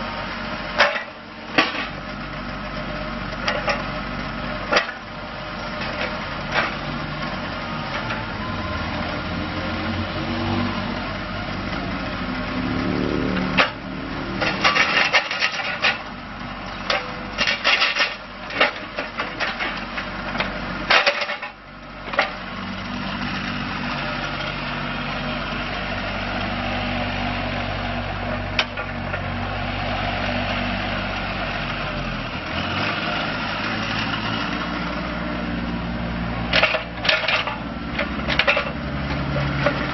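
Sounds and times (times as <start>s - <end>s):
excavator diesel engine: 0.0s - 39.9s
metallic clanks and knocks: 14.4s - 16.1s, 16.8s - 22.4s, 28.6s - 29.2s, 36.5s - 39.9s.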